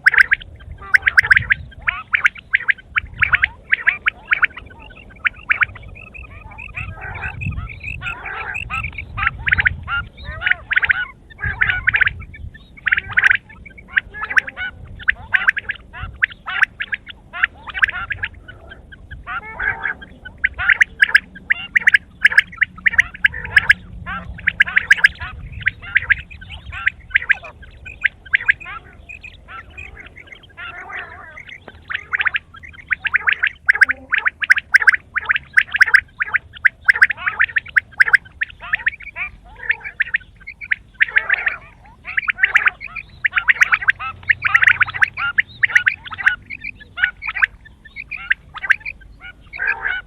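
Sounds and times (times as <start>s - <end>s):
quail calling: 0.0s - 50.0s.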